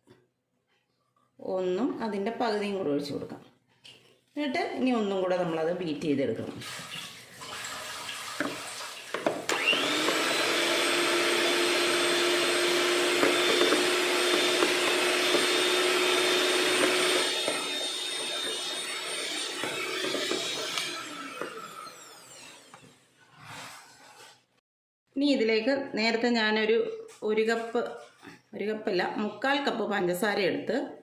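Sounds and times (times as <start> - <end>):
electric mixer motor whining: 9.2 - 23.7.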